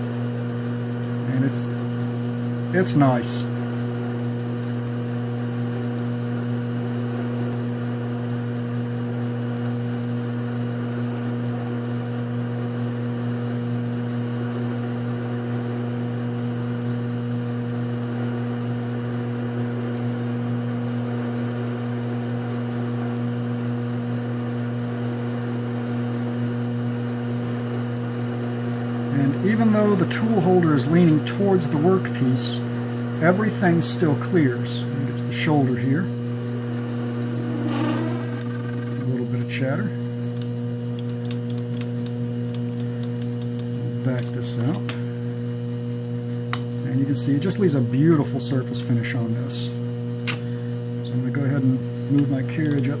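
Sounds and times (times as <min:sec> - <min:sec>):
lathe motor hum: 0:27.5 - 0:45.8
lathe cutting metal: 0:34.9 - 0:39.3.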